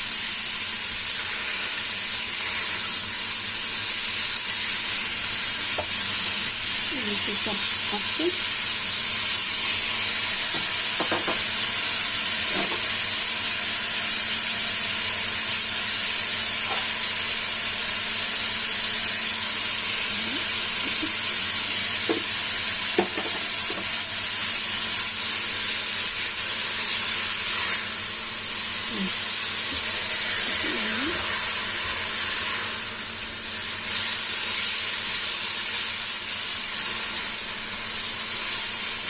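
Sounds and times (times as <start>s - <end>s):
meat sizzling in a wok: 0.0s - 39.0s.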